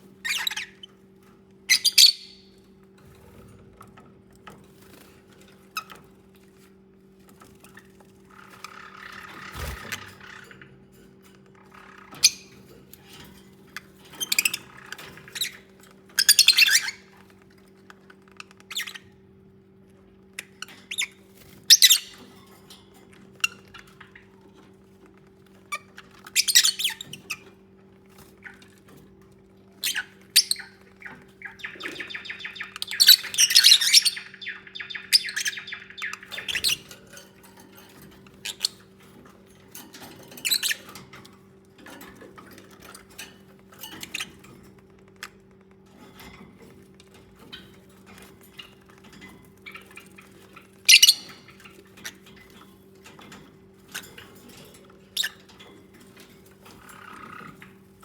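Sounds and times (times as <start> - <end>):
lovebirds chirping and squawking: 0.2 - 1.0, 1.7 - 3.5, 8.3 - 10.8, 11.5 - 17.2, 18.3 - 19.2, 20.4 - 22.6, 25.6 - 27.5, 29.7 - 39.2, 40.1 - 41.1, 47.4 - 57.9.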